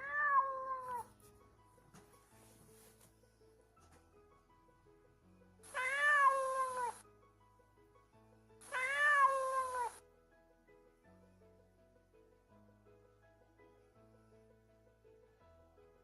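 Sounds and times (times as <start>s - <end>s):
cat meowing: 0.0s - 1.1s, 5.7s - 7.0s, 8.6s - 10.0s
soft background music: 0.0s - 16.0s.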